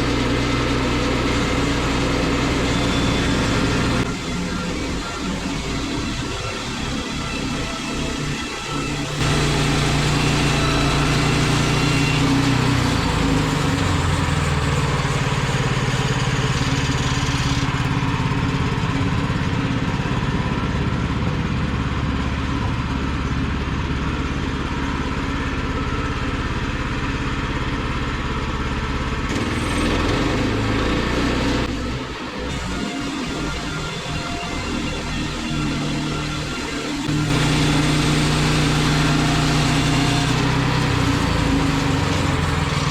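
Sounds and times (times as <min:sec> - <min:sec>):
sawmill engine running: 0:00.0 - 0:42.9.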